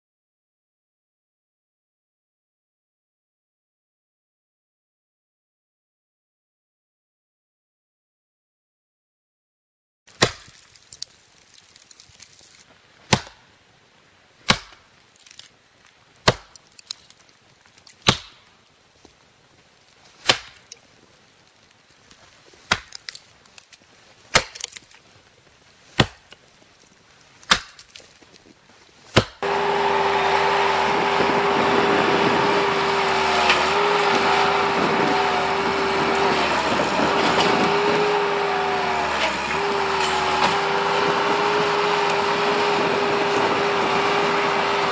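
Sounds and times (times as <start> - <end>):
axe chopping wood: 10.1 - 10.7, 13.1 - 13.4, 14.5 - 14.8, 16.2 - 16.9, 18.0 - 18.5, 20.2 - 20.7, 22.7 - 23.2, 24.3 - 24.8, 26.0 - 26.3, 27.4 - 28.0, 29.1 - 30.5, 38.8 - 42.7
skid loader engine droning: 29.4 - 44.9.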